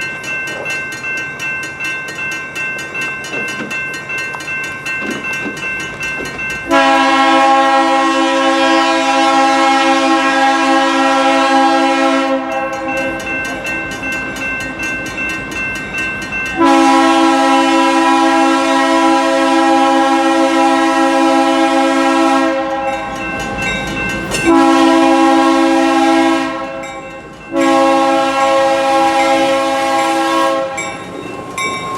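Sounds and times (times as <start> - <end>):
train running with rhythmic clicking: 0.0 - 31.9
locomotive air horn chord: 6.7 - 13.2, 16.6 - 23.1, 24.5 - 31.0
faint steady high tones: 26.7 - 31.9.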